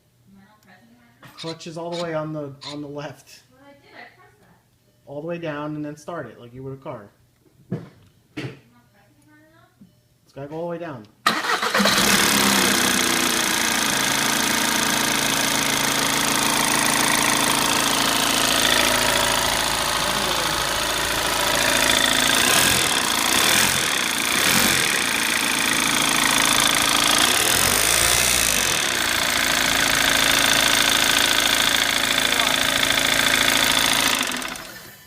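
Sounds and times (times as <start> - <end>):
diesel engine knocking clatter: 28.6 - 34.7.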